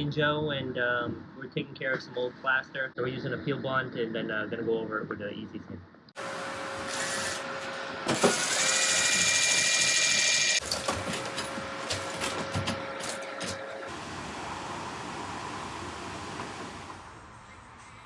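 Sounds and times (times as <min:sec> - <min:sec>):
steady background hum: 0:00.0 - 0:16.0
electric drill running: 0:06.2 - 0:10.7.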